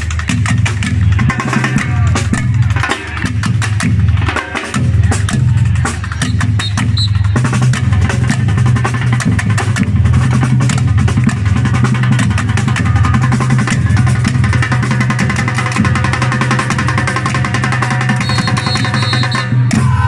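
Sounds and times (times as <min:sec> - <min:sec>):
band playing loudly: 0:00.0 - 0:20.0
drum kit beating: 0:00.0 - 0:20.0.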